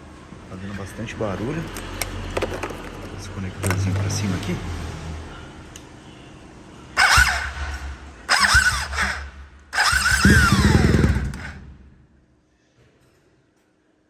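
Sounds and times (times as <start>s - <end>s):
motorcycle starter motor cranking: 7.0s - 11.6s.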